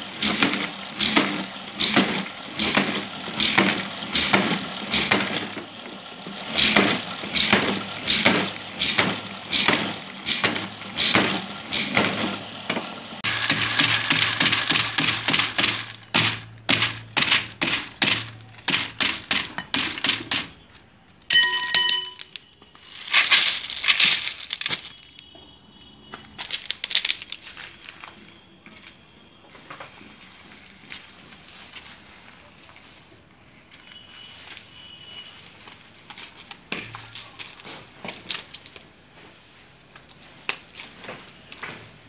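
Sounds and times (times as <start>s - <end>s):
sharp knocks and clinks: 21.3s - 22.5s.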